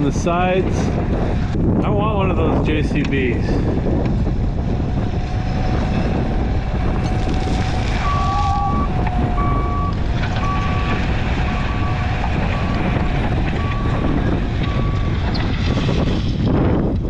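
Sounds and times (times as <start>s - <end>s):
diesel engine running: 0.0s - 17.0s
reversing alarm beeping: 7.5s - 15.3s.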